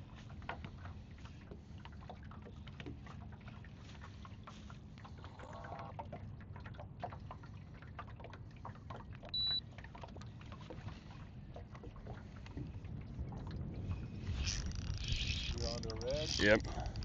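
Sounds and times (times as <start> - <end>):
water lapping against boat hull: 0.0 - 17.0
short electronic beep: 9.4 - 9.6.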